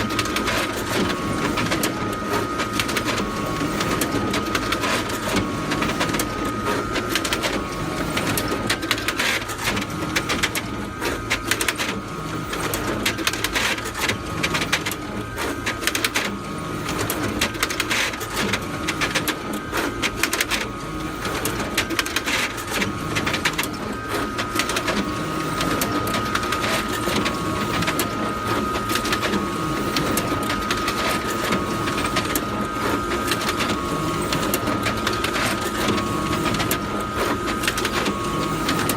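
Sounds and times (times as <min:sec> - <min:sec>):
paper feed clicking: 0:00.0 - 0:38.9
photocopier whirring and humming: 0:00.0 - 0:38.9.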